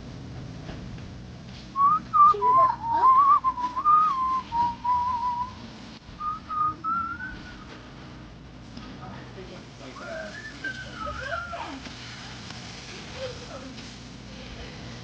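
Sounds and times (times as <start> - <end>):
person whistling a tune: 1.8 - 5.6, 6.2 - 7.6.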